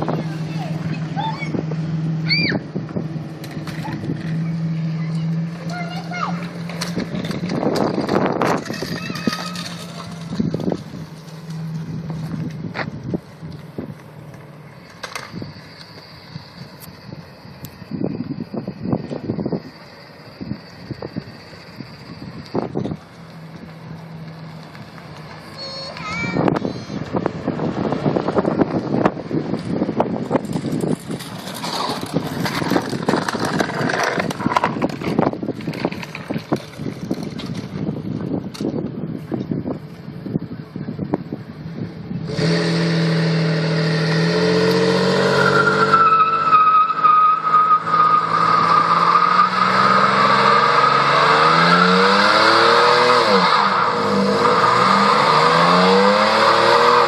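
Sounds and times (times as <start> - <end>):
tyres spinning on dirt: 0.0 - 26.4, 27.0 - 40.9
car engine running: 0.0 - 45.2.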